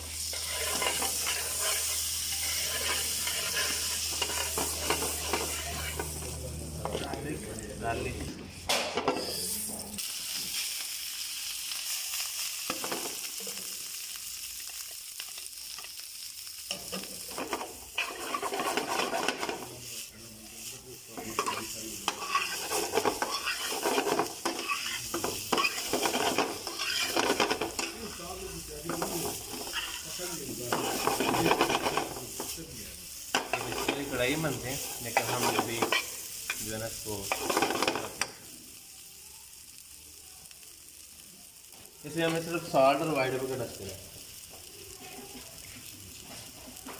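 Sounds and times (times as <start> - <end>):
garlic sizzling in butter: 0.0 - 46.9
spatula scraping pan: 0.2 - 6.2, 17.4 - 19.7, 21.2 - 28.2, 28.8 - 32.2, 33.3 - 36.6.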